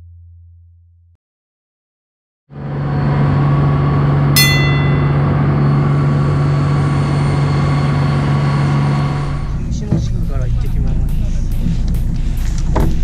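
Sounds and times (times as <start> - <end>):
boat engine droning: 2.5 - 13.0
high metallic ring: 4.3 - 8.0.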